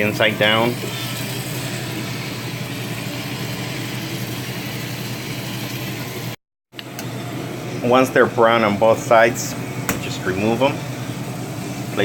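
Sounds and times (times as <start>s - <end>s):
chicken sizzling in a pan: 0.0s - 6.4s.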